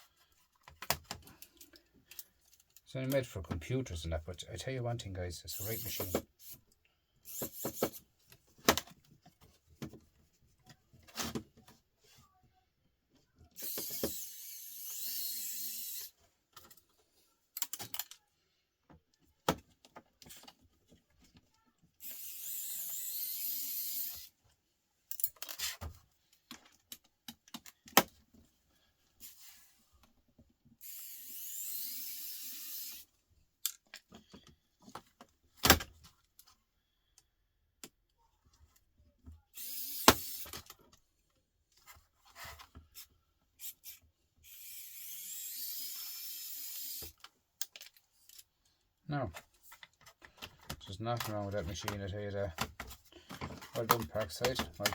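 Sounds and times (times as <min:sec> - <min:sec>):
electric screwdriver running: 0:13.6 - 0:16.1, 0:22.0 - 0:24.3, 0:30.8 - 0:33.0, 0:39.6 - 0:40.5, 0:44.5 - 0:47.2
clicks and knocks of handling: 0:25.1 - 0:28.5, 0:49.3 - 0:54.9.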